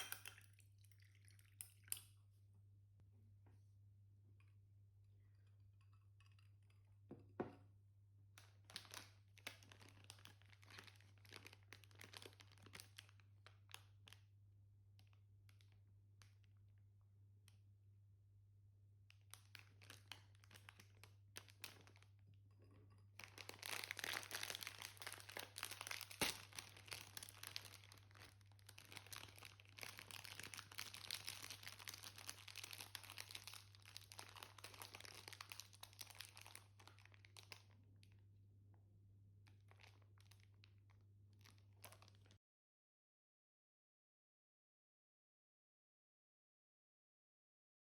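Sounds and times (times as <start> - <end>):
faint crinkling and rustling: 8.4 - 14.2, 19.1 - 38.2, 39.4 - 42.4.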